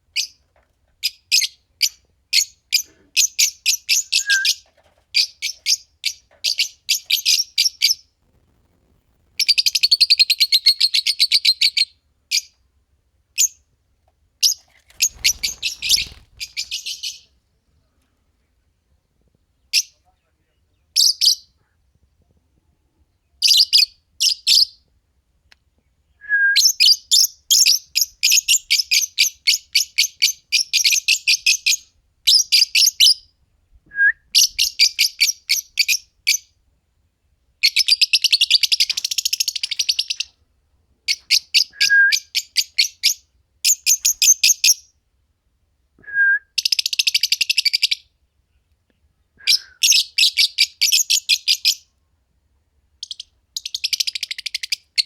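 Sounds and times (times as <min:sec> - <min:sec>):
lovebirds chirping: 0:05.2 - 0:12.5, 0:14.4 - 0:17.8.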